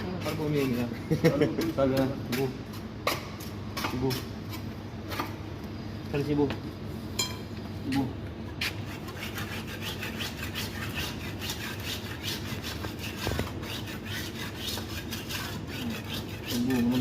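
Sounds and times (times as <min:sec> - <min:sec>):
rasping scrapes by hand: 0:08.6 - 0:17.0.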